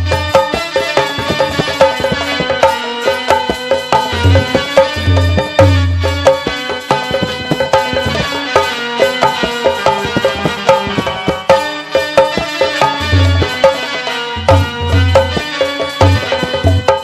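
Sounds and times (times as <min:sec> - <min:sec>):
hand drum beat: 0:00.0 - 0:17.0
melody of held notes: 0:00.0 - 0:17.0.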